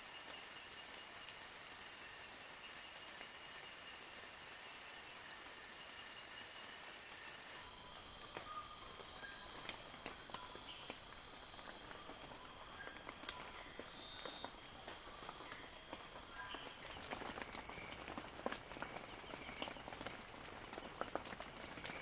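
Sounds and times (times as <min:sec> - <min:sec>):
raindrops ticking on leaves: 0:00.0 - 0:22.0
cicada buzzing: 0:07.6 - 0:17.0.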